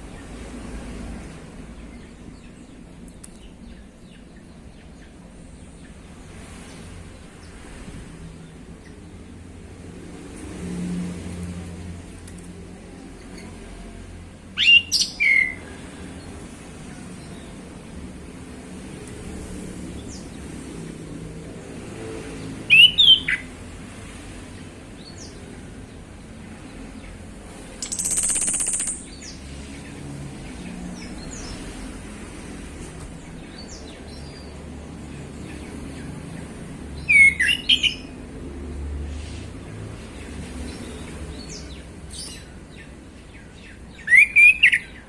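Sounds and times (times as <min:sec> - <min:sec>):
thrush whistled song: 0:22.7 - 0:23.4, 0:27.8 - 0:29.0, 0:37.1 - 0:38.1.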